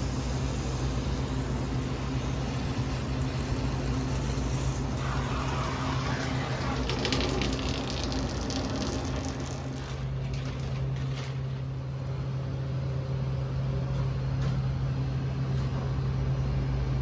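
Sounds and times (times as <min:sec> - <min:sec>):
water spraying and running: 0:00.0 - 0:10.7
low mechanical hum: 0:00.0 - 0:17.0.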